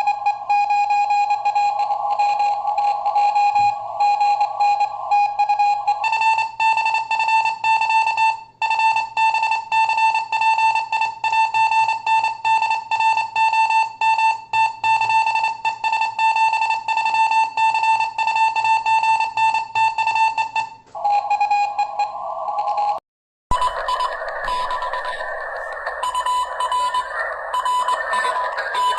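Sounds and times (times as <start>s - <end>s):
radio receiver hiss: 0.0s - 6.1s, 23.5s - 28.9s
morse code beeping: 0.0s - 28.9s.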